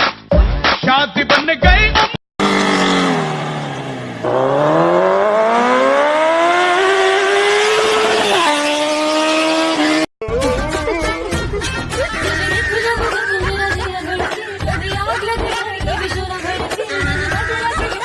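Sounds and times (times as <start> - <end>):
music: 0.0 - 2.2, 10.2 - 18.0
engine revving: 2.4 - 10.1.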